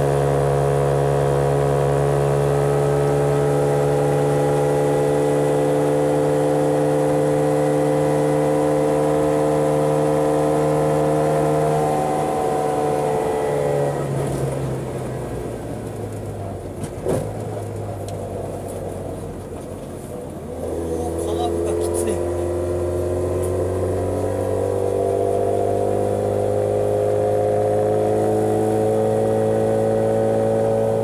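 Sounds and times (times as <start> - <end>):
small two-stroke engine running: 20.5 - 31.0.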